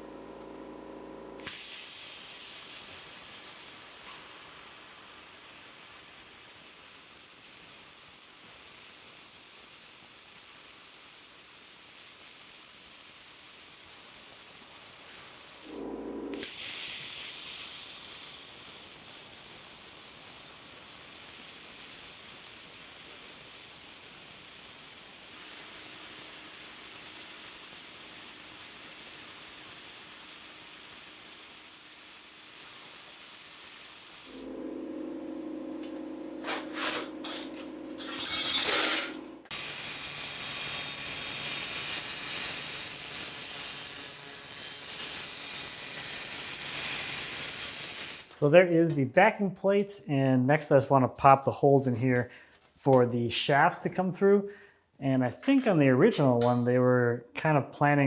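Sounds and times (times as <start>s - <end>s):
plasma cutter hissing: 1.4s - 34.5s, 36.4s - 48.9s.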